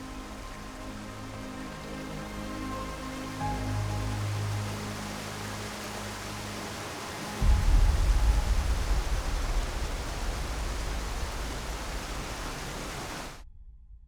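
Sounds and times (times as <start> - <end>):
rushing noise with deep rumble: 4.2 - 14.0.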